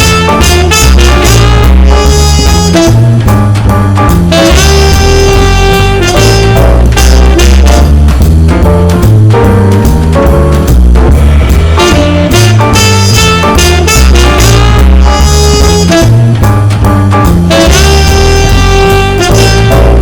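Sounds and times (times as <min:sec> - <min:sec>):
upbeat jazz music: 0:00.0 - 0:20.0.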